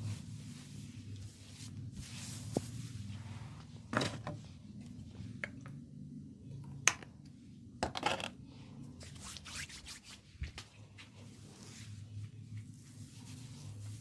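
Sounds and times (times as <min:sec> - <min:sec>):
hands rubbing and patting head: 0:00.0 - 0:03.2.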